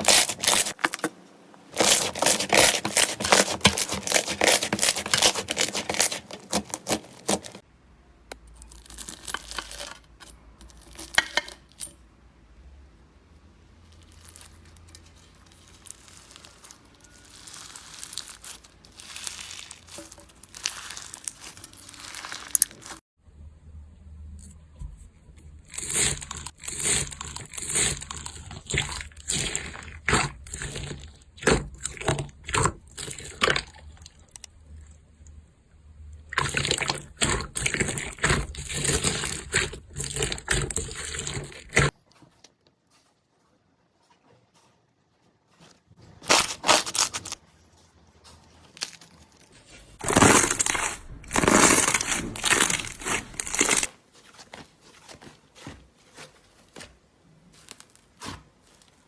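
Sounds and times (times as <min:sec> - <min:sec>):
slime squelching and popping: 0:25.7 - 0:34.5, 0:36.3 - 0:41.9, 0:50.0 - 0:53.9.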